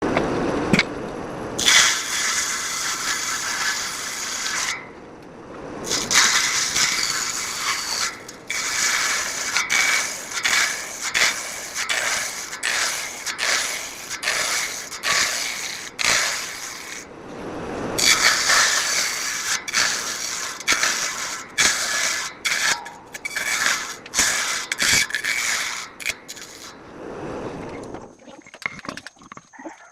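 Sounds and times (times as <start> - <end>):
table saw cutting wood: 1.6 - 4.8, 5.8 - 17.1, 18.0 - 26.7.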